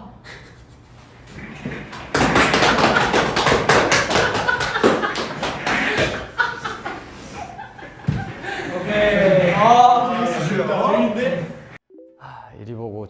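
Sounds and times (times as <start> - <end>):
rapid hand slaps on a body: 2.1 - 6.2.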